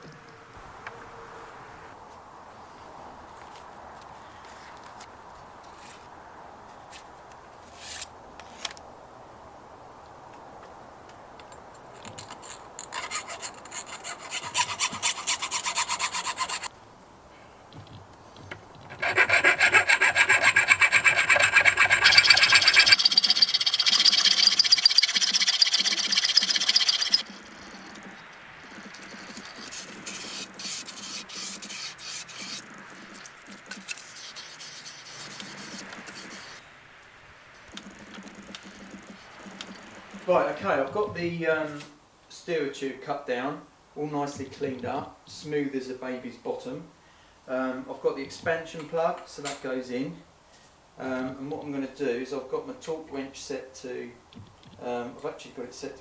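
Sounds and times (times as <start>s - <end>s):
hand tools rasping metal tube: 12.3s - 16.7s, 18.8s - 27.4s, 29.0s - 32.6s, 33.7s - 36.6s.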